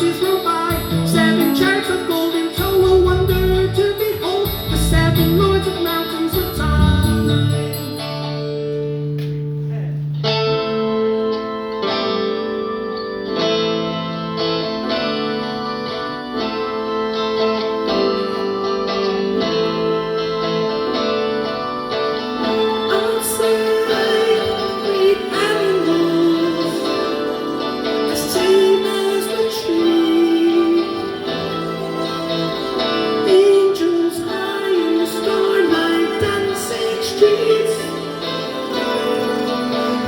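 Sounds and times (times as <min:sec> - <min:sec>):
plucked string chords: 0:00.0 - 0:40.0
soft rock band playing: 0:00.0 - 0:40.0
wavering lead melody: 0:00.0 - 0:40.0.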